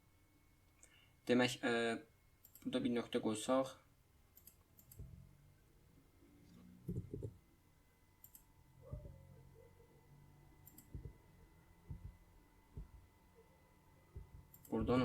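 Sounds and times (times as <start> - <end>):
computer clicks: 2.4 - 2.8, 4.4 - 5.1, 8.2 - 8.5, 10.6 - 11.2, 14.2 - 15.0.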